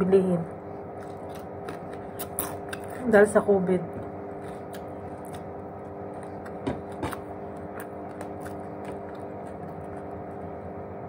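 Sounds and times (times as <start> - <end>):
background hum: 0.0 - 11.0
eating crunches and clicks: 1.0 - 3.0, 4.0 - 10.6.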